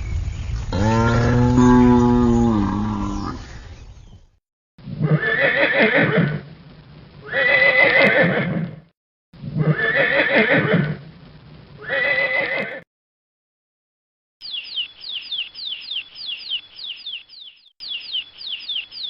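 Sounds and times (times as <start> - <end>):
horse neighing: 5.0 - 6.4, 7.2 - 8.8, 9.5 - 11.0, 11.8 - 12.8.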